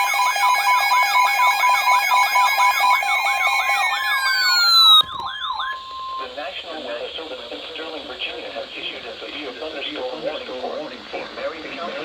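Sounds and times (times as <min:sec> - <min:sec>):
fast warbling siren: 0:00.0 - 0:06.4.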